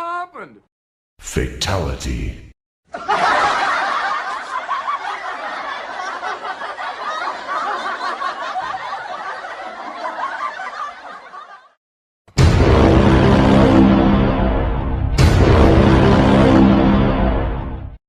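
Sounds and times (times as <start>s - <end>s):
crowd laughing: 2.9s - 11.8s.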